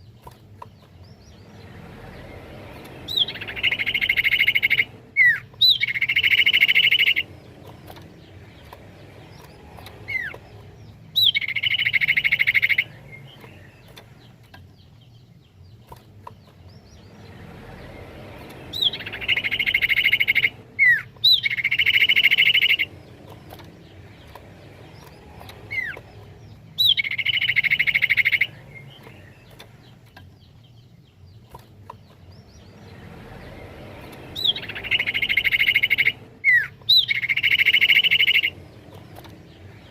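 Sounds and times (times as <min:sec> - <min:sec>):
bird whistling and trilling: 0:03.1 - 0:07.3, 0:09.4 - 0:10.4, 0:11.1 - 0:13.7, 0:18.7 - 0:22.9, 0:25.7 - 0:26.0, 0:26.8 - 0:29.1, 0:34.3 - 0:38.6.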